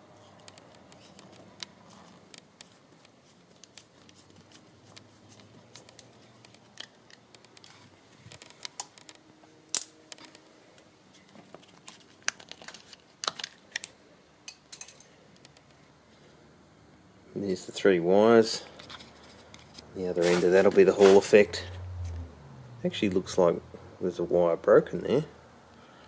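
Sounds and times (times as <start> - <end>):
plastic housing clicking and snapping: 12.3 - 13.9.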